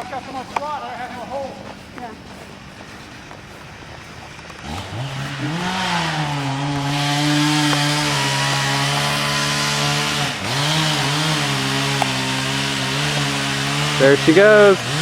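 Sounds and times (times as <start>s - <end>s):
chainsaw cutting a trunk: 4.2s - 15.0s.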